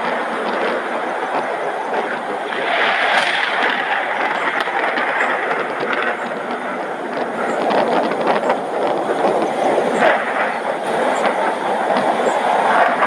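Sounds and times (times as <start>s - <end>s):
heavy rain falling: 0.0s - 13.0s
raindrops striking close by: 0.0s - 13.0s.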